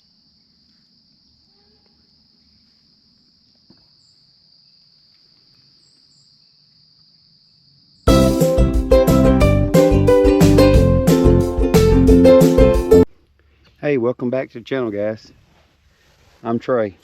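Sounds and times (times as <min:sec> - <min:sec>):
insect chorus buzzing: 0:00.0 - 0:08.1.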